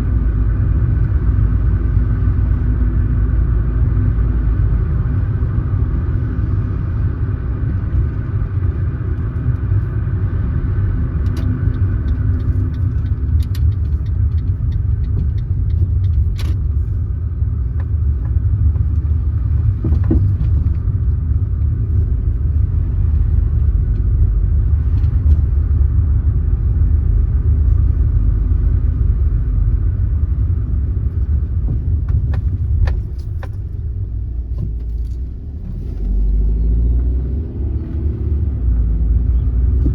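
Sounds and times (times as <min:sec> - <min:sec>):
car tyres and engine rumble: 0:00.0 - 0:39.9
faint clicks and rattles: 0:11.2 - 0:22.0.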